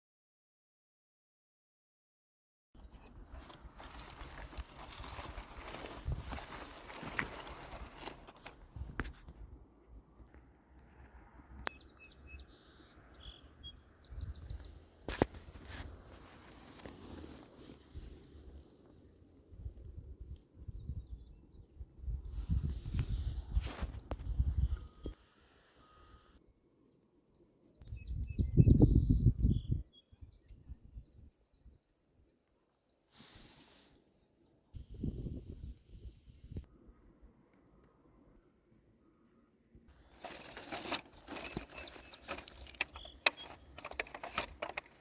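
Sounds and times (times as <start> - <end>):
small birds chirping: 2.8 - 8.6, 10.8 - 16.8, 24.1 - 36.6, 39.9 - 45.0
small birds warbling chirps: 11.7 - 14.9, 40.0 - 45.0.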